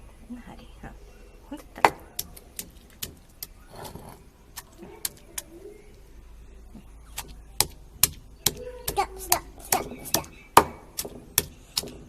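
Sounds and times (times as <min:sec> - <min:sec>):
pounding plant material: 0:07.1 - 0:12.0.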